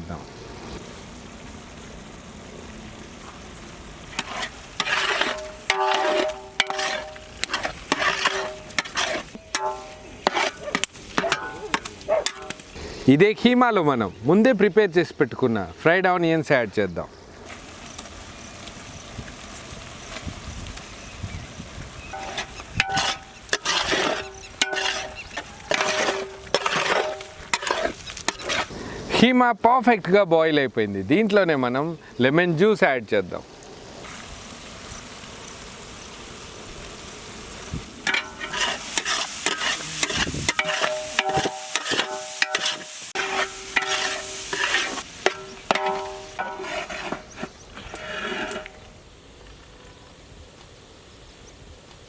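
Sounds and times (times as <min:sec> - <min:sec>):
meat simmering in metal pot: 0:01.0 - 0:12.8, 0:21.8 - 0:29.2, 0:38.0 - 0:48.9
ladle scraping metal pot: 0:04.1 - 0:12.8, 0:22.1 - 0:28.7, 0:38.0 - 0:48.9.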